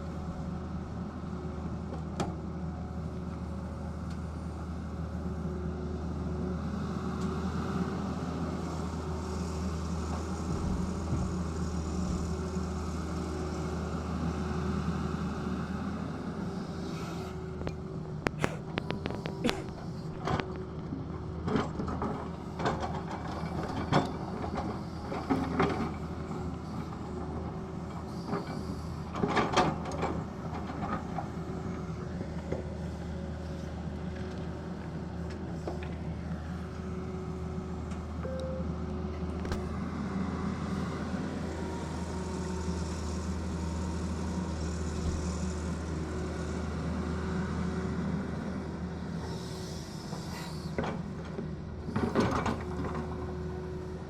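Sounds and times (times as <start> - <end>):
excavator diesel engine running: 0.0 - 54.0.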